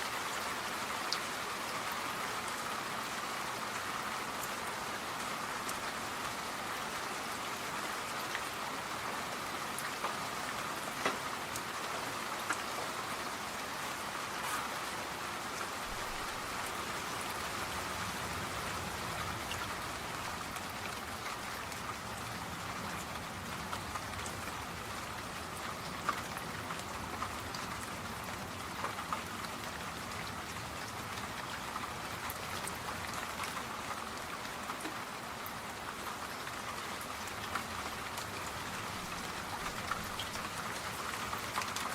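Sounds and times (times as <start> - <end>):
steady rain hissing: 0.0 - 41.9
raindrops ticking: 35.7 - 41.9.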